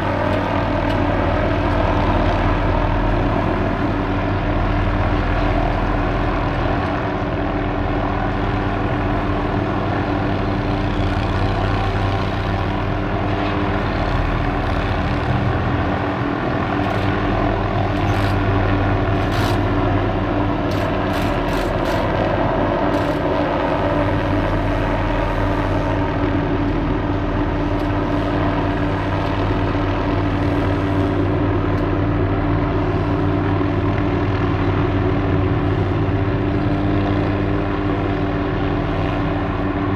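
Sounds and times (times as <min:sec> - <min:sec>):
helicopter engine and rotor: 0:00.0 - 0:39.9.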